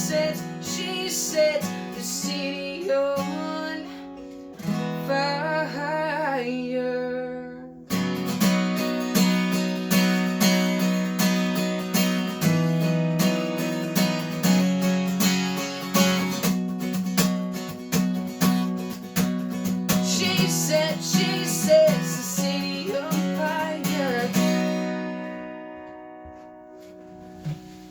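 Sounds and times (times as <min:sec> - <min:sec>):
person singing: 0:00.0 - 0:03.9, 0:20.0 - 0:24.8
acoustic guitar strumming: 0:00.0 - 0:27.9.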